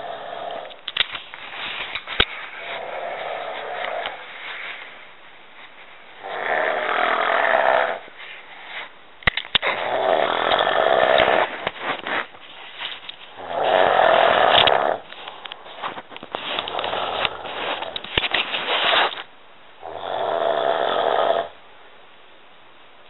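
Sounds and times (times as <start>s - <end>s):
person snoring: 0.0s - 0.8s, 6.2s - 8.0s, 9.7s - 11.5s, 13.4s - 15.1s, 19.8s - 21.6s.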